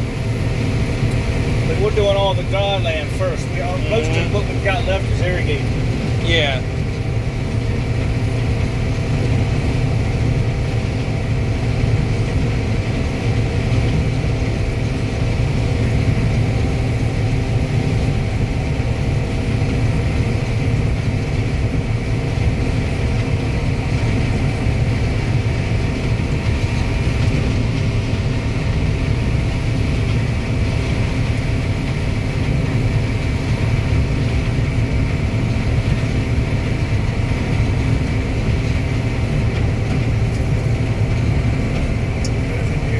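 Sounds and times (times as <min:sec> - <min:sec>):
combine harvester running: 0:00.0 - 0:42.9.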